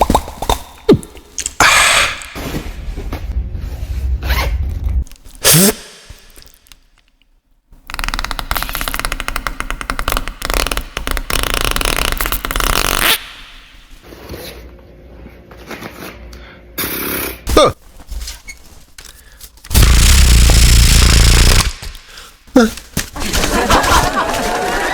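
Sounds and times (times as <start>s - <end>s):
beatbox buzzing rattle: 7.8s - 13.8s, 19.7s - 22.2s
beatbox deep blast: 19.7s - 22.0s.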